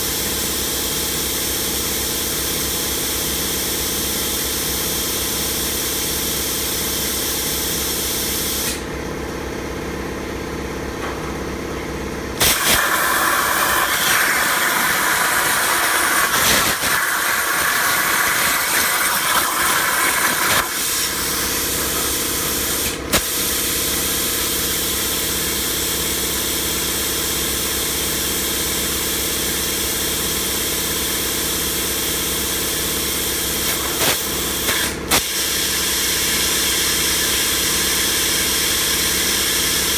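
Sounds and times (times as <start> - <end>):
harsh hiss of plasma cutting: 12.4 - 24.3, 32.6 - 38.4
air hissing: 12.4 - 25.2, 32.6 - 38.2.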